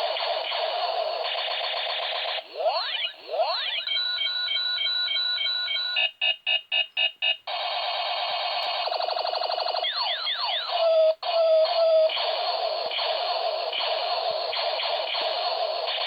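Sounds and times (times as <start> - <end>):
electronic alarm tones: 9.3 - 12.1.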